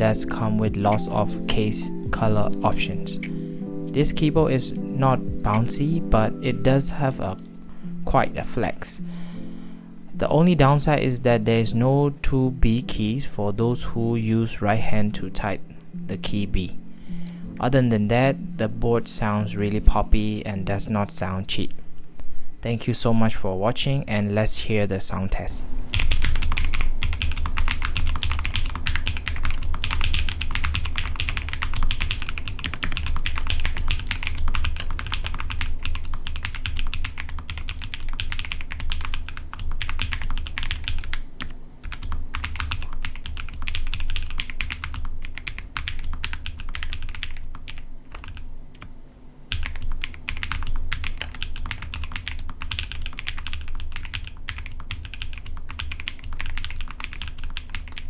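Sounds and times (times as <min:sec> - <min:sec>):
fast mechanical keyboard typing: 0:25.6 - 0:48.9, 0:49.5 - 0:58.0.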